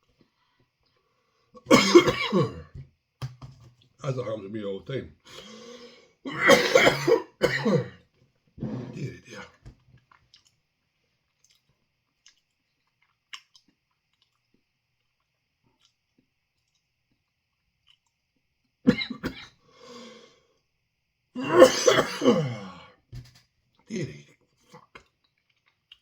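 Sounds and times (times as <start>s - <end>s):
breath: 0.2s - 1.5s, 5.3s - 6.2s, 19.6s - 20.6s
man coughing: 1.7s - 2.7s, 6.3s - 8.0s, 21.4s - 22.9s.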